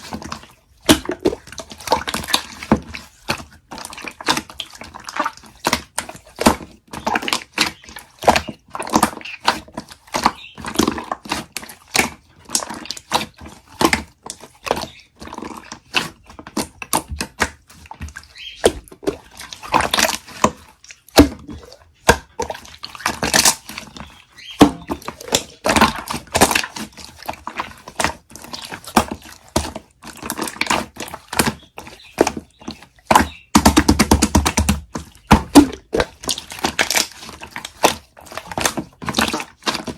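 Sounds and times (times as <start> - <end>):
slime squelching: 0.0 - 39.9
slime popping: 24.4 - 31.4, 33.0 - 39.9.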